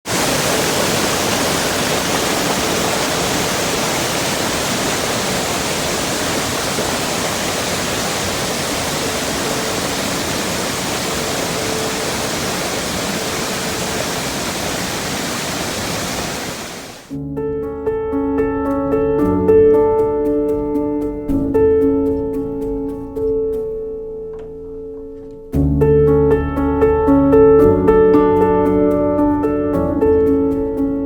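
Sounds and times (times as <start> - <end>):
waterfall rushing: 0.1 - 17.1.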